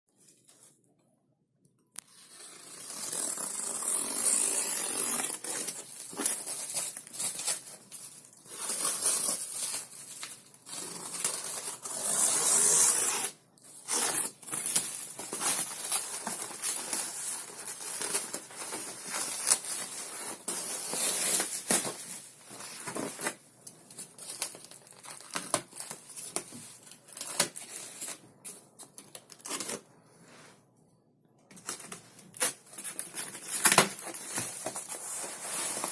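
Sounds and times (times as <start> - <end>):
packaging rustling and tearing: 2.9 - 12.2, 31.6 - 35.9.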